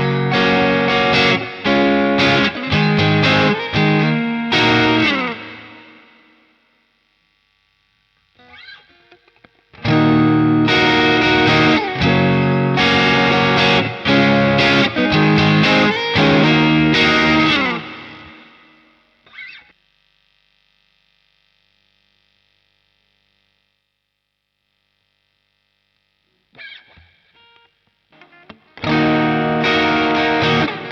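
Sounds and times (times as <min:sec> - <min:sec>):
distorted electric guitar riff: 0:00.0 - 0:07.7, 0:08.3 - 0:20.7, 0:26.0 - 0:30.9
faint picked guitar notes: 0:08.6 - 0:18.6, 0:26.8 - 0:30.9.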